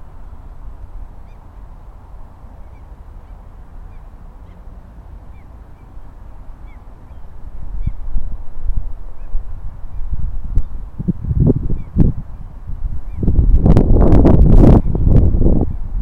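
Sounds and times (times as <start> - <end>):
low steady rumble: 0.0 - 16.0
waterfowl calling: 2.6 - 6.0.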